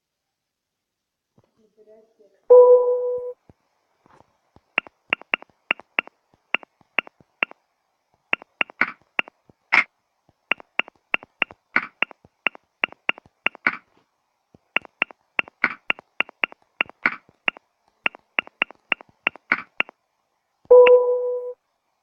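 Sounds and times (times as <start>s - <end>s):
phone keyboard taps clicking: 4.8s - 7.1s, 8.4s - 9.3s, 10.5s - 13.8s, 14.8s - 19.9s.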